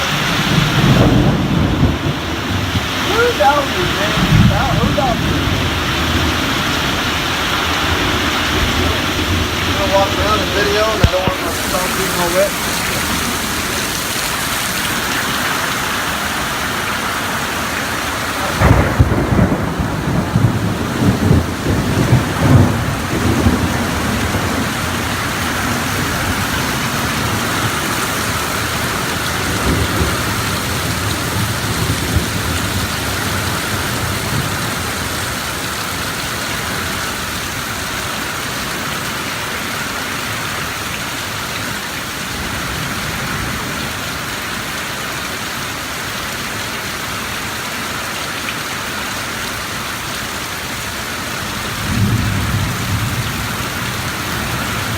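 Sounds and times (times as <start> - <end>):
thunder rumbling: 0.0 - 15.1, 18.2 - 35.4, 51.5 - 54.9
heavy rain falling: 0.0 - 54.9.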